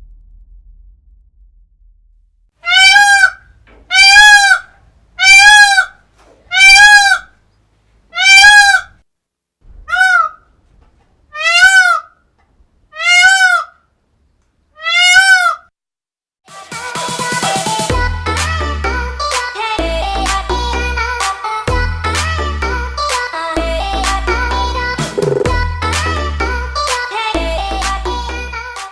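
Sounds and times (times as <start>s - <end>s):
peacock calling: 2.6s - 7.4s, 8.0s - 9.0s, 9.7s - 10.6s, 11.3s - 12.3s, 12.9s - 13.9s, 14.7s - 15.7s.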